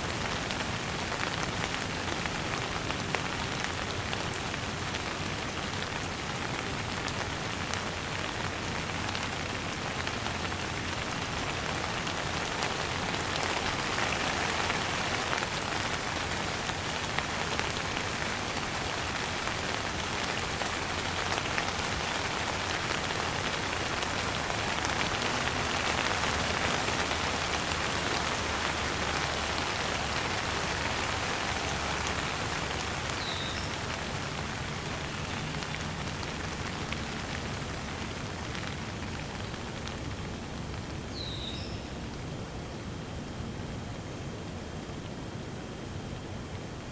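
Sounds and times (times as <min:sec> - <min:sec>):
steady rain falling: 0:00.0 - 0:46.9.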